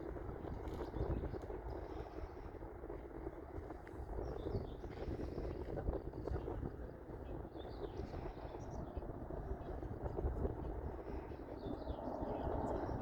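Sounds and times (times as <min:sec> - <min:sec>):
distant jet engines rumbling: 0:06.4 - 0:13.0.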